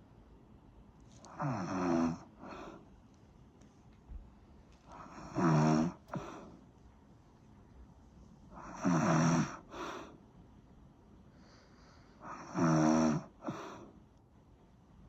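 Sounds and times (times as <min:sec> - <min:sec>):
soft breath sound: 0:01.0 - 0:07.0, 0:07.6 - 0:14.1
loud snores: 0:01.3 - 0:02.8, 0:04.9 - 0:06.5, 0:08.6 - 0:10.1, 0:12.2 - 0:13.9.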